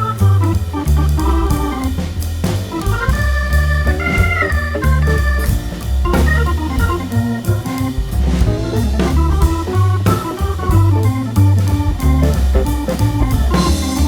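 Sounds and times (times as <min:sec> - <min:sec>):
organ music with bass and beat: 0:00.0 - 0:14.0.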